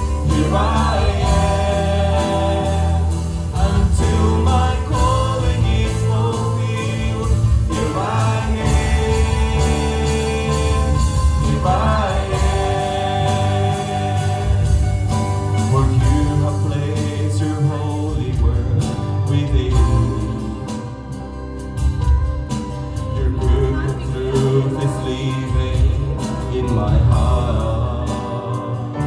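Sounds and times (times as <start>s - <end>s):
person singing: 0.0s - 21.2s
worship song with band: 0.0s - 29.0s.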